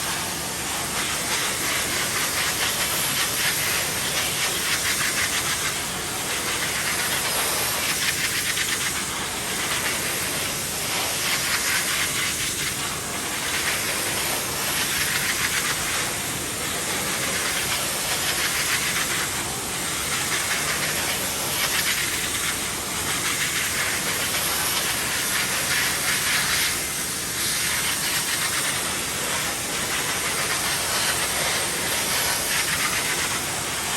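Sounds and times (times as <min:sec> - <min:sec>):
steam jet hissing: 0:00.0 - 0:33.9.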